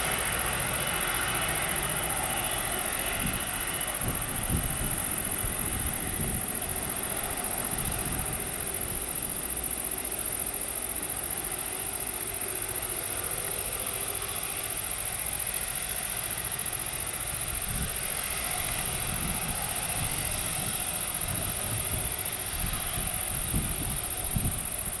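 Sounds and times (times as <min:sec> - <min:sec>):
distant jet engine rush: 0:00.0 - 0:25.0
high hiss: 0:00.0 - 0:25.0
wind buffeting microphone: 0:03.0 - 0:09.6, 0:17.4 - 0:25.0.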